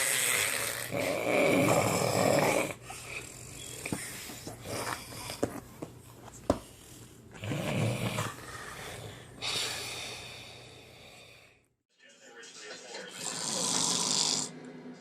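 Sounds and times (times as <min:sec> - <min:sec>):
snoring: 0:00.0 - 0:04.0, 0:06.8 - 0:11.5, 0:13.2 - 0:14.6.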